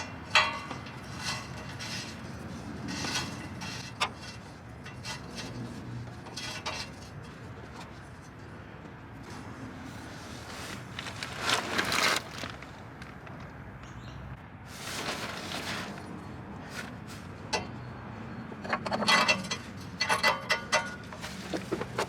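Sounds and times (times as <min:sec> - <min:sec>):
wrench clinking and scraping metal: 0:00.0 - 0:08.1, 0:17.5 - 0:22.0.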